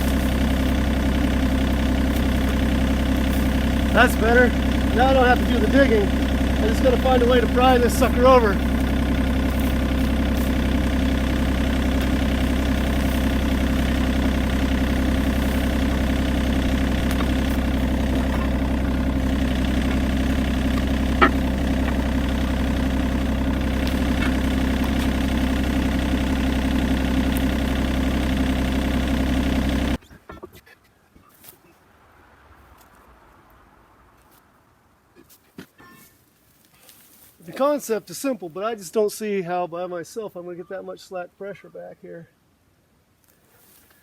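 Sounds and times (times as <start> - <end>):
diesel engine idling: 0.0 - 30.2.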